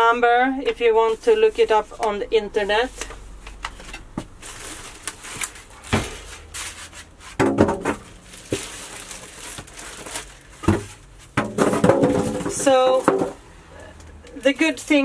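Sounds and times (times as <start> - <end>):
packaging and paper rustling: 3.8 - 12.8.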